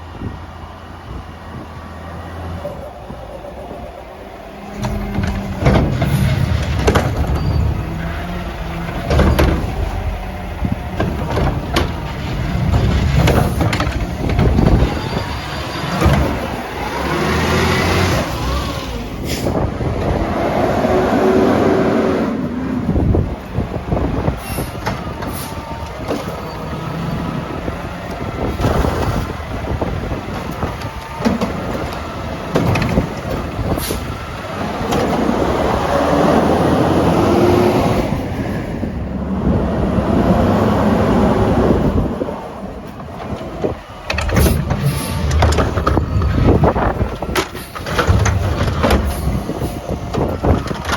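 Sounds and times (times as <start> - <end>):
truck engine revving: 0.0 - 50.9
wind buffeting microphone: 0.0 - 50.9
hydraulic whine: 1.1 - 37.6
air brake hisses: 19.2 - 19.6, 24.4 - 25.6.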